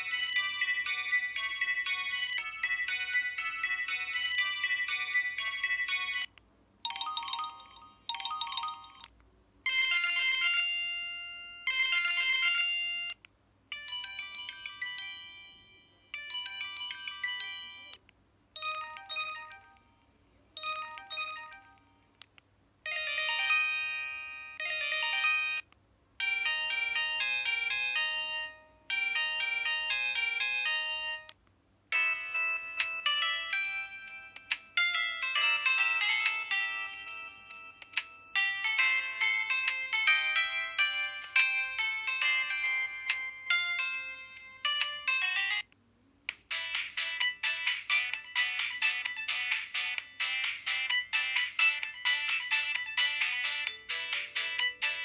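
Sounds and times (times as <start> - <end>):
phone electronic alert melodies: 6.9 - 9.1, 32.0 - 45.6, 46.5 - 55.0.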